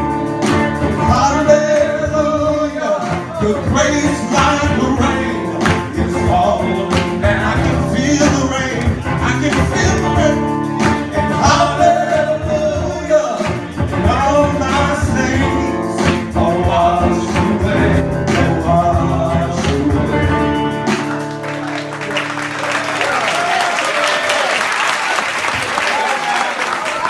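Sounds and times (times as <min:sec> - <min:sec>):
band playing worship song: 0:00.0 - 0:27.0
person singing: 0:00.8 - 0:21.3.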